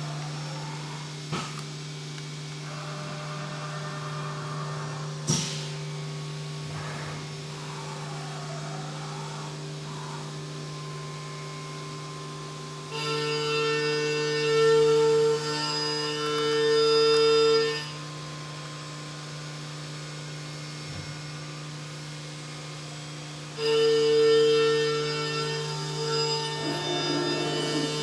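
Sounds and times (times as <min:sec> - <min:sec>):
cnc mill humming and whining: 0:00.0 - 0:28.0
ringing tone: 0:26.6 - 0:28.0.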